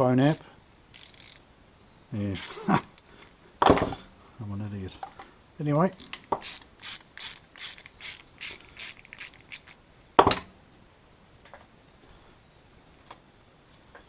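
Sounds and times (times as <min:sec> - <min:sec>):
ratchet wrench clicking: 0:00.2 - 0:01.4, 0:02.3 - 0:03.0, 0:06.0 - 0:09.8.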